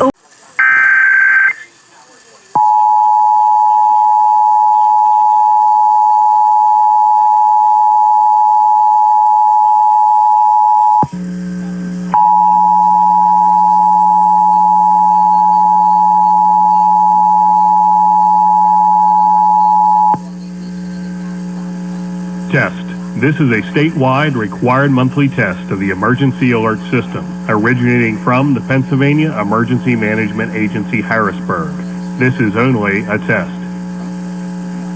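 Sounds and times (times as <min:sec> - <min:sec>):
low hum: 0:10.6 - 0:34.9.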